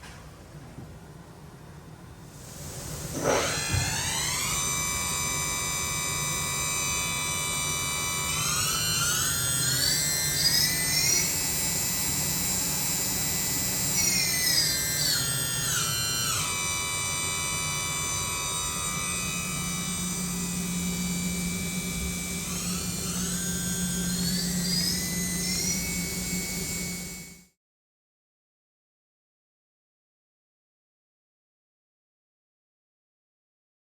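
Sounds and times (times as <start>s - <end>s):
machine spindle whining: 2.8s - 27.4s.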